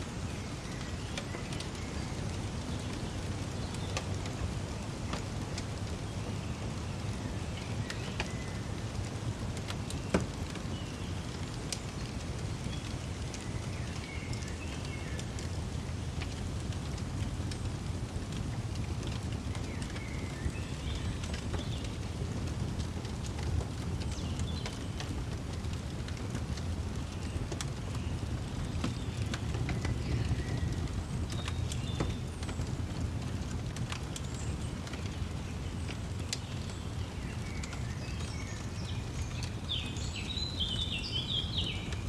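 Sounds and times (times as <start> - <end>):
fireplace crackling and popping: 0.0 - 42.0.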